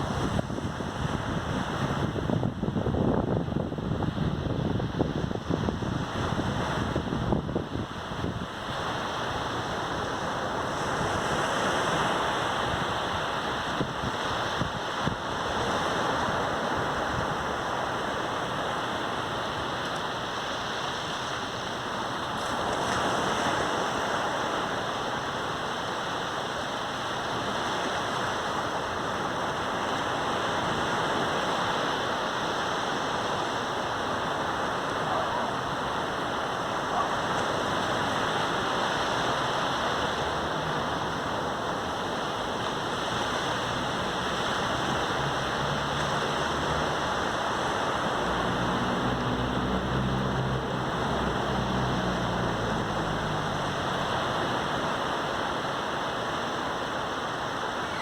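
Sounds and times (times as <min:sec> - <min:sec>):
wind buffeting microphone: 0:00.0 - 0:09.0
waves breaking on beach: 0:00.0 - 0:58.0.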